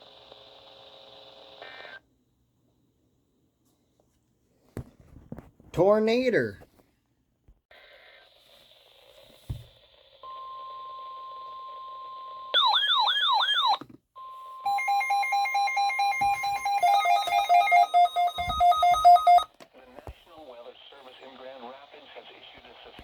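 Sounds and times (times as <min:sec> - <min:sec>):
rapid beeps changing pitch: 0:14.7 - 0:19.4.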